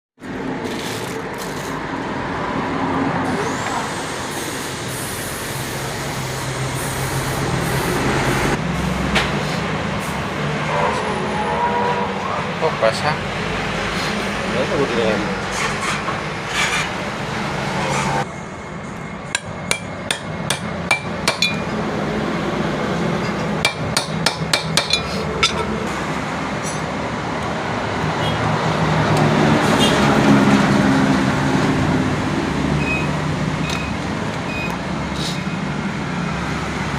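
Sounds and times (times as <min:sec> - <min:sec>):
steady background noise: 0:00.2 - 0:36.9
hand tool striking metal: 0:19.3 - 0:21.8, 0:23.2 - 0:25.8.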